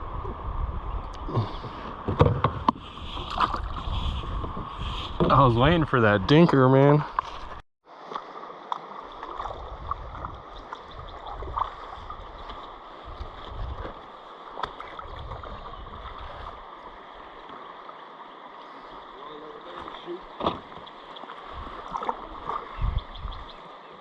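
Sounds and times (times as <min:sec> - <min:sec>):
wind rumble on microphone: 0:00.0 - 0:06.3, 0:09.4 - 0:14.0, 0:14.8 - 0:16.6, 0:21.4 - 0:23.6
river water around kayak: 0:00.0 - 0:24.0.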